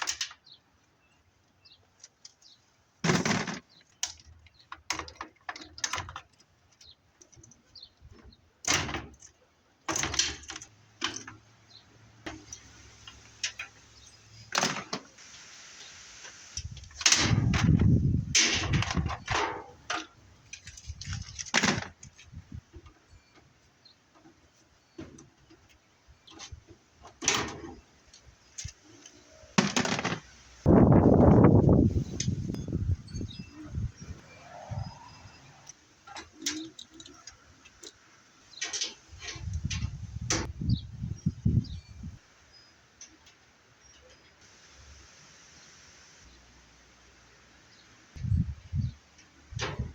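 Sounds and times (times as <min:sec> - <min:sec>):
metal parts knocking and clanking: 0:03.0 - 0:06.5, 0:08.2 - 0:11.4, 0:14.4 - 0:15.1, 0:16.9 - 0:23.5, 0:26.3 - 0:27.9, 0:29.6 - 0:30.4.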